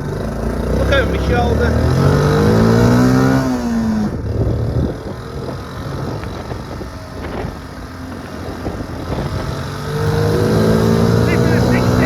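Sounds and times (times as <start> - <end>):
small motorcycle engine pulling away: 0.0 - 12.0
wind buffeting microphone: 1.8 - 12.0.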